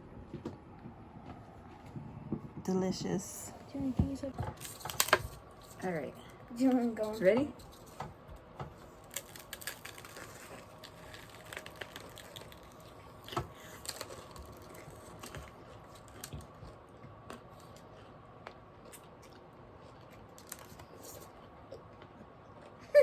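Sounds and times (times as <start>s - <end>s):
chewing and crunching: 4.4s - 23.0s.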